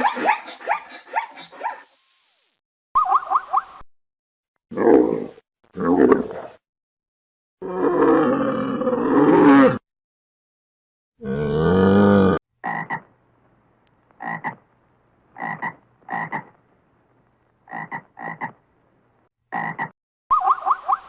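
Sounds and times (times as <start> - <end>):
frog croaking: 12.6 - 13.1, 14.2 - 14.6, 15.4 - 16.6, 17.7 - 18.6, 19.5 - 19.9.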